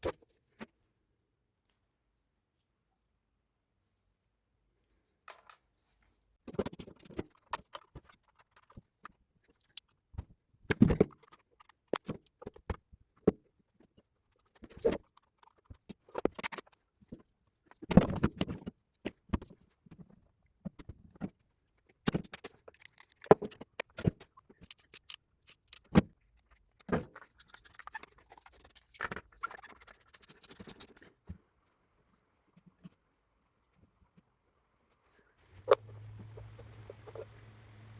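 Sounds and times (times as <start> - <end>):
metal parts and tools clinking: 22.0 - 26.0.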